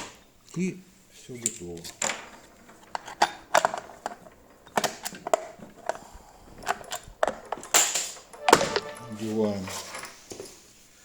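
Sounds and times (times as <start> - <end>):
plastic parts clacking and knocking: 1.4 - 9.0.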